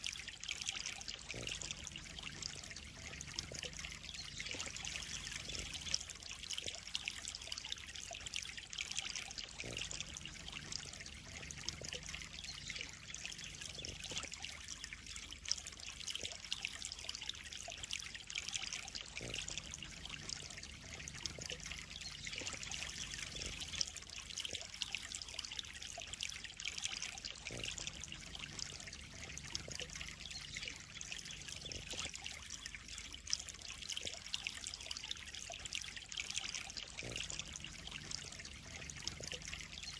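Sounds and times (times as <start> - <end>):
water trickling into a pond: 0.0 - 39.9
faint low hum: 0.6 - 16.9.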